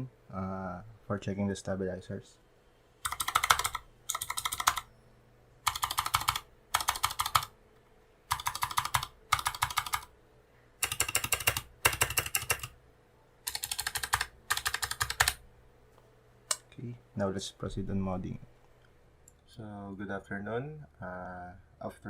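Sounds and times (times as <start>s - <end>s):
clicky keyboard keys pressed: 3.0s - 4.8s, 5.7s - 7.5s, 8.3s - 10.1s, 10.8s - 12.7s, 13.5s - 15.4s.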